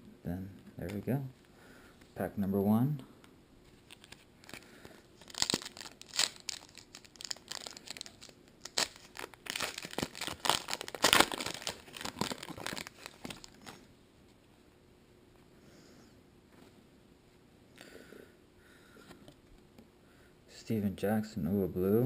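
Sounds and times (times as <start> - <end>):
wrapper tearing and crinkling: 3.8 - 13.9.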